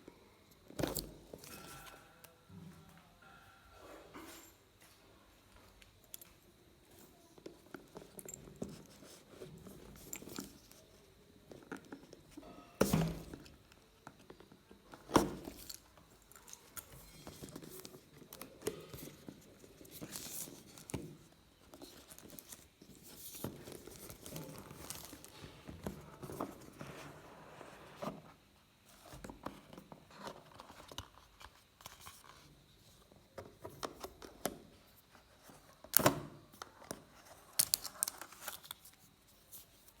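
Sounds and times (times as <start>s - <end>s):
wrapping rustling and tearing: 21.8s - 25.7s, 37.2s - 40.0s.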